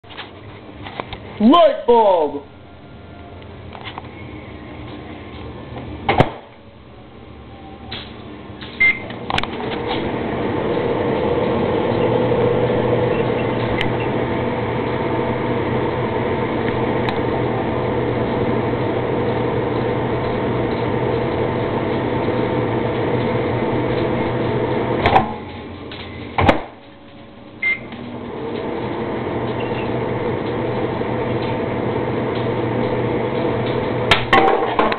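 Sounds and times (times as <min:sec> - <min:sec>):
microwave oven humming: 0:00.0 - 0:34.9
keypad beep: 0:08.8 - 0:09.1, 0:27.6 - 0:27.9.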